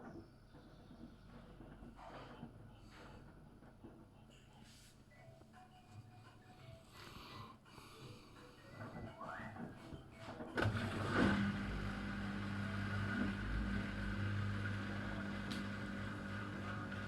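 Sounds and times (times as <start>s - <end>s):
washing machine humming: 8.7s - 17.0s.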